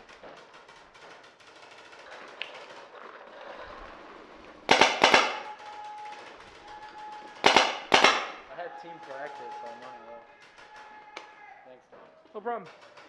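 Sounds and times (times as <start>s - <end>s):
paintball marker firing: 4.7s - 5.7s, 7.4s - 8.5s.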